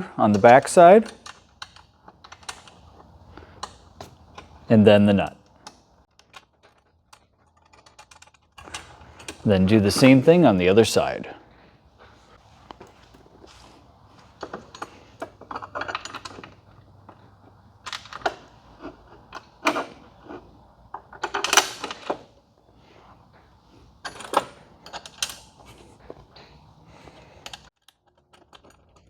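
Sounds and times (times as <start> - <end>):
metal hardware rattle: 0.3 - 4.8, 5.6 - 10.4, 12.2 - 23.0, 24.0 - 29.0
metal hardware clinking: 14.2 - 22.3, 24.0 - 29.0.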